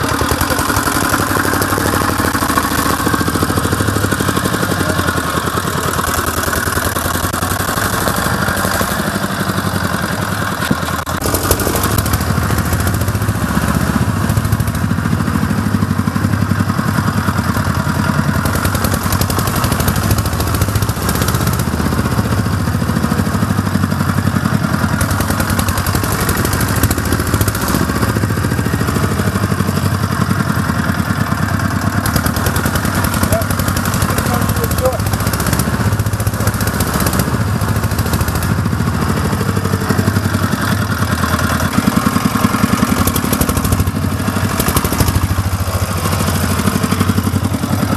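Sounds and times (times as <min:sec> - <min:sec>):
quad bike engine running: 0:00.0 - 0:47.9.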